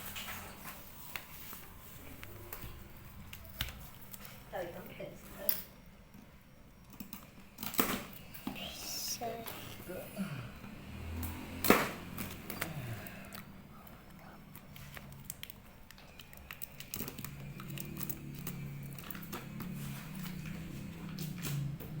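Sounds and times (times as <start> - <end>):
cardboard and packaging rustling: 0.0 - 5.5, 11.5 - 22.0.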